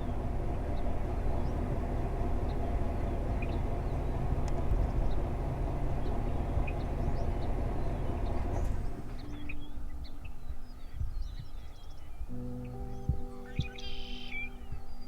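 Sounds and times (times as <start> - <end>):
low noisy rumble: 0.0 - 15.0
small birds chirping: 0.0 - 15.0
music notes: 9.1 - 15.0.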